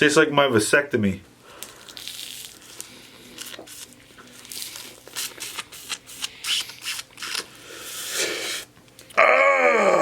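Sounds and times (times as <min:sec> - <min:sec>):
plastic sleeve crinkling: 0:01.6 - 0:07.5.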